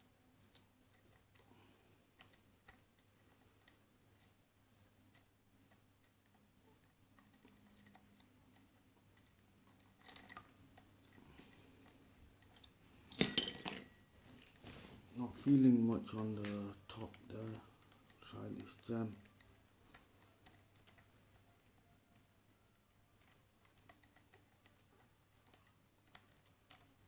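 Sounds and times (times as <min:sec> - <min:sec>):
lock pick rattling: 0:07.2 - 0:14.0.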